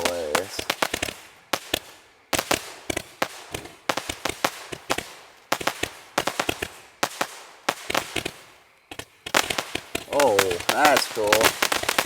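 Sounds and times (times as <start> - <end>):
fireworks cracking: 0.0 - 12.0.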